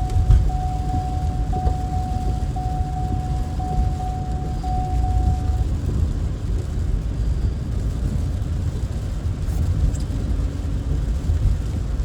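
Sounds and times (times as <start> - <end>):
thin steady tone: 0.0 - 5.8
road and engine rumble in car: 0.0 - 12.0.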